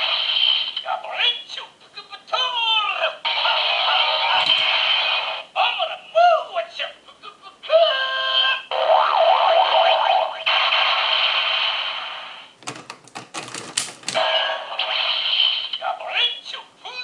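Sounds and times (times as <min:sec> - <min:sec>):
sharp plastic clicks: 0:12.6 - 0:14.2.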